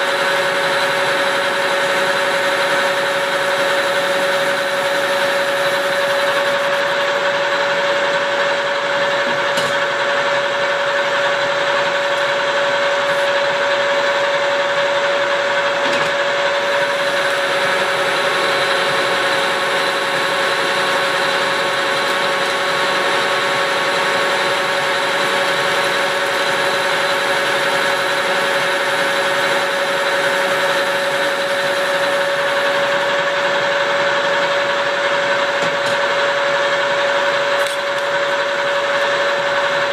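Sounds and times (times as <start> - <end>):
machine hum: 0.0 - 7.6, 16.6 - 33.7
lathe mechanical whine: 0.0 - 39.9.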